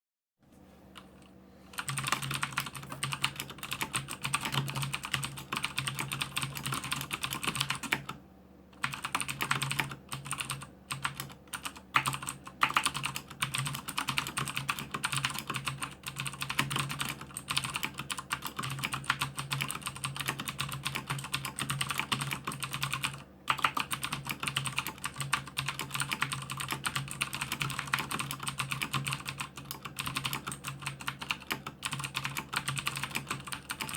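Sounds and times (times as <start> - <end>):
fast mechanical keyboard typing: 1.0 - 8.2, 8.8 - 33.9.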